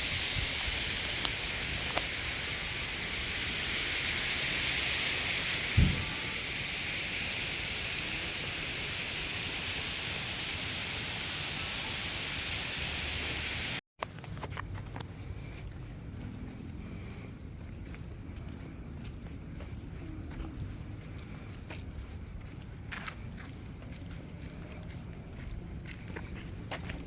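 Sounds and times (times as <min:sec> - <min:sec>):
steady rushing hiss: 0:00.0 - 0:13.8
insect chirping: 0:00.0 - 0:27.0.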